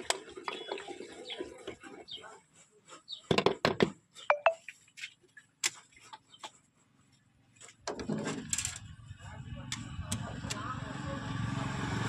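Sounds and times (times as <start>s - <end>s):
short beeps: 4.3s - 4.6s
engine running low: 8.6s - 12.0s.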